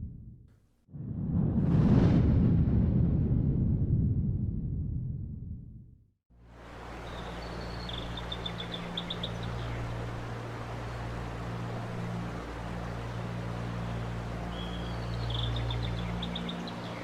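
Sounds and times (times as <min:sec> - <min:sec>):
birds chirping: 0:06.6 - 0:17.0.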